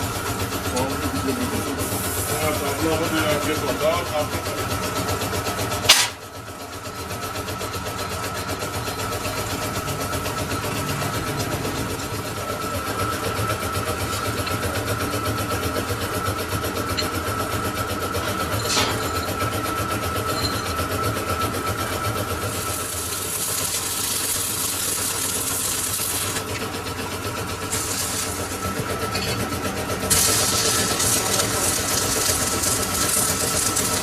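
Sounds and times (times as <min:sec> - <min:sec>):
lathe whining and humming: 0:00.0 - 0:34.0
hiss: 0:01.8 - 0:02.4, 0:30.1 - 0:33.9.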